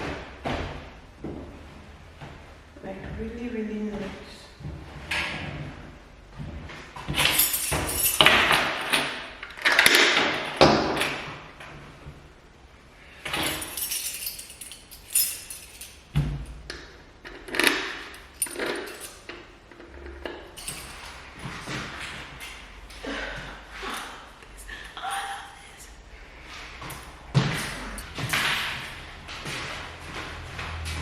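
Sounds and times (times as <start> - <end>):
small metallic clinks: 7.2 - 9.1, 13.3 - 16.6, 17.3 - 21.3.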